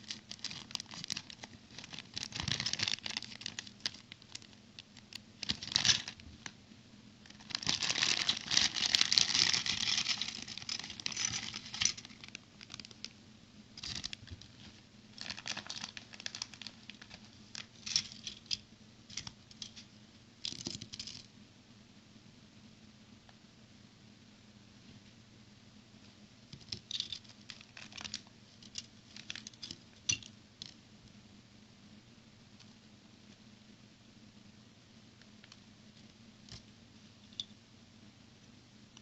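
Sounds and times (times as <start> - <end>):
plastic packaging crinkling: 0.0 - 6.6, 7.2 - 13.2, 13.8 - 19.8, 26.6 - 30.2.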